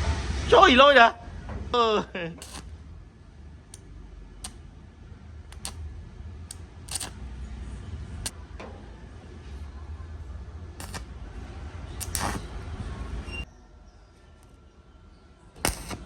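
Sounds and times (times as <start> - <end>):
sharp clicks and knocks: 2.4 - 2.6, 5.5 - 5.8, 10.8 - 11.0, 15.6 - 16.0.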